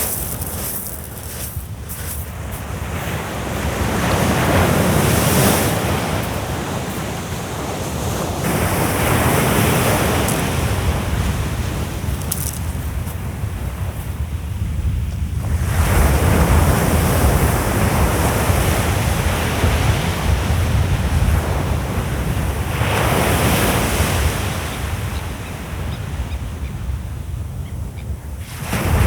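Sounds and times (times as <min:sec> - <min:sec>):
sea waves breaking: 0:00.0 - 0:14.2, 0:28.5 - 0:29.0
wind rumbling on microphone: 0:00.0 - 0:29.0.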